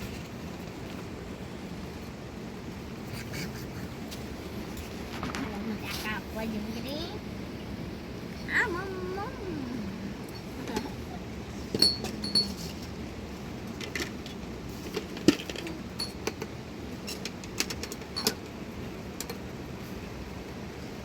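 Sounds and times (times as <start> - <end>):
short ringing clinks: 11.8 - 12.6.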